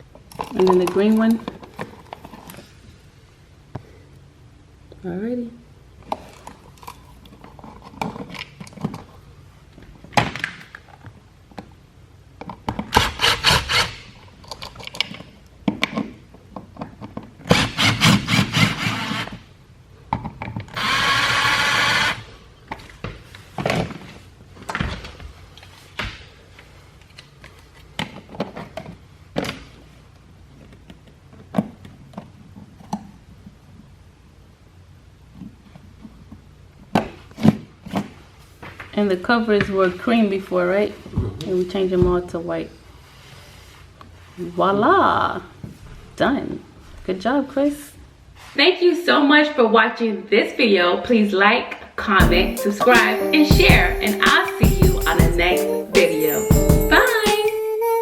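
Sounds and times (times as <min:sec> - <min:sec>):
cordless drill driving screws: 0:13.0 - 0:14.0, 0:17.5 - 0:19.3, 0:20.8 - 0:22.3.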